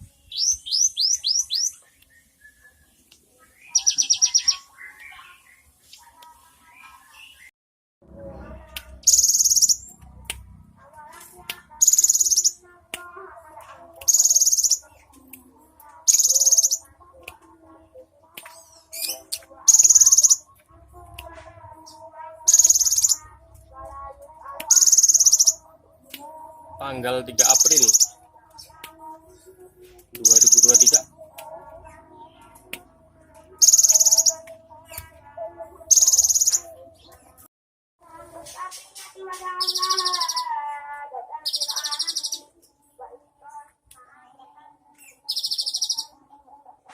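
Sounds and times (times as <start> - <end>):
bird chirps: 0.3 - 7.5, 9.0 - 10.0, 11.8 - 12.6, 14.0 - 14.9, 16.1 - 16.9, 18.6 - 20.5, 21.9 - 23.3, 24.7 - 25.6, 27.4 - 28.8, 30.2 - 31.1, 33.6 - 35.0, 35.9 - 37.2.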